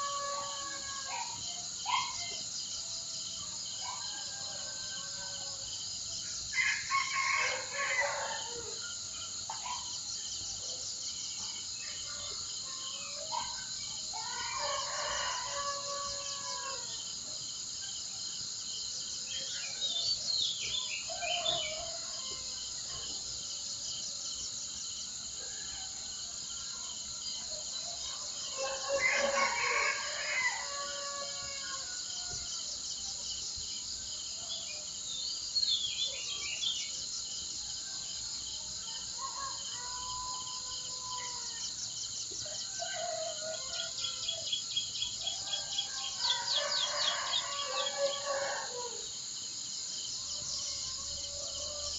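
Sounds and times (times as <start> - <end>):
rooster crowing: 0.0 - 1.2, 6.6 - 8.8, 14.1 - 17.0, 28.0 - 32.6, 39.0 - 41.8, 42.5 - 44.6, 45.2 - 49.1, 50.4 - 51.9
insects droning: 0.0 - 51.9.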